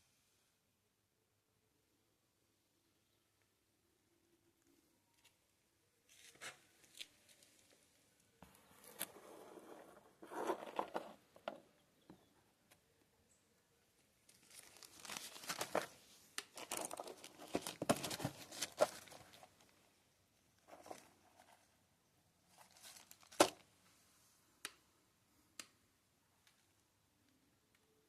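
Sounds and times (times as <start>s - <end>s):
rustling and crinkling handling: 6.1s - 11.7s, 14.2s - 19.9s, 20.6s - 21.8s, 22.5s - 24.0s.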